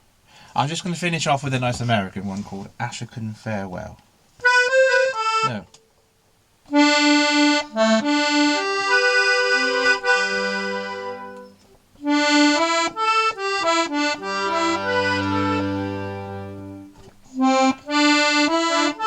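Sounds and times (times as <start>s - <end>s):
accordion melody over bass notes: 4.4s - 5.7s, 6.7s - 19.0s.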